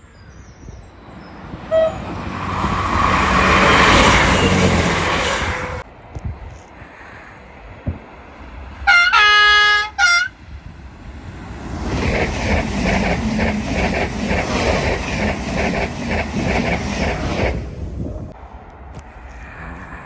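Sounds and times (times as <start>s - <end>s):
train horn: 1.7s - 5.8s, 8.8s - 10.4s
train wheels clattering on rails: 2.0s - 5.8s, 11.2s - 18.1s.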